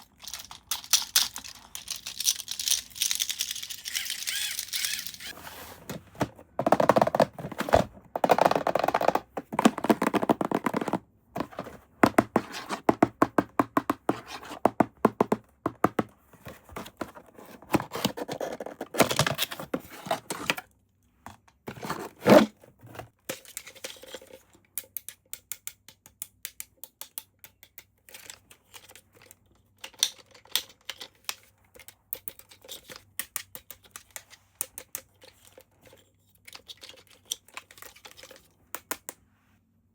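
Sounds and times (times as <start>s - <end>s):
plastic parts clicking: 0.0s - 5.4s.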